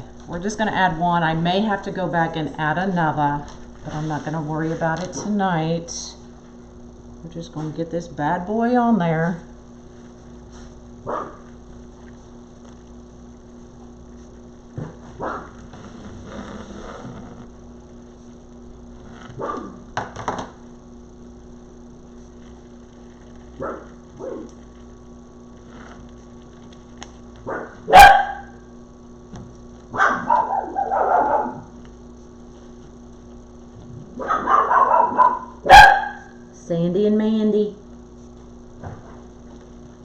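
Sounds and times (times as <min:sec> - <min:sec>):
dogs barking: 0:11.0 - 0:11.5, 0:15.2 - 0:15.5, 0:19.4 - 0:19.8, 0:23.6 - 0:24.5, 0:27.4 - 0:28.6, 0:29.9 - 0:31.7, 0:34.2 - 0:36.3.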